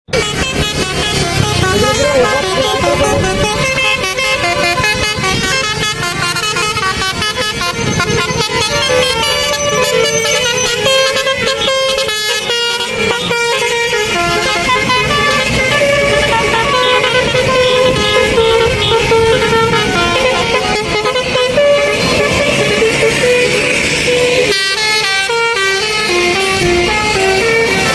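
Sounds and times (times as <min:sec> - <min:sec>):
musical air horns playing a tune: 0:00.1 - 0:27.9.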